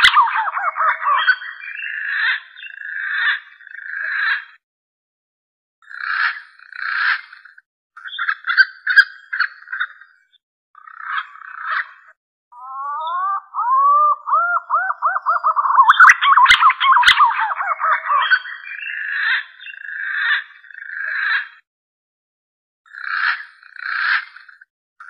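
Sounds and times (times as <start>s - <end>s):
pigeon warbling calls: 0.0s - 3.3s, 12.6s - 21.4s
whistled bird notes: 12.6s - 19.8s.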